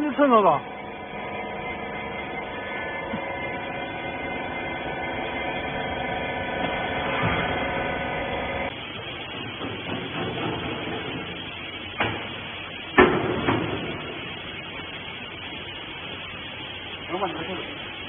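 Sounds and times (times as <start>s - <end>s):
baler machinery humming: 0.0s - 18.0s.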